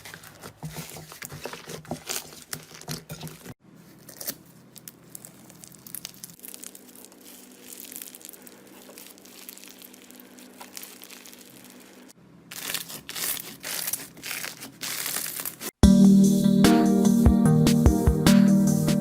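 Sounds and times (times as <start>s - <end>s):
slime squeezed by hand crackling: 4.1s - 15.7s.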